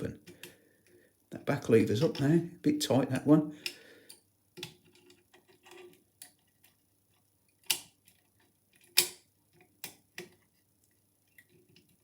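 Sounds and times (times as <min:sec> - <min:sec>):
lock picking metallic clicks: 0:07.6 - 0:08.2, 0:08.8 - 0:10.4.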